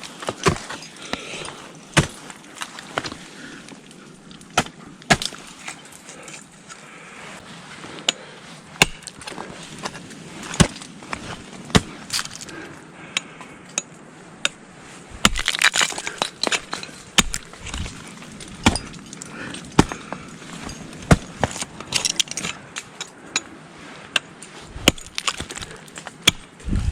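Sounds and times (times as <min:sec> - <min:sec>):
ice tools striking ice: 0:04.4 - 0:06.4, 0:11.7 - 0:12.5, 0:15.2 - 0:23.1, 0:24.8 - 0:26.5
ice crunching and breaking away: 0:11.7 - 0:12.5, 0:15.2 - 0:22.6, 0:24.8 - 0:26.5.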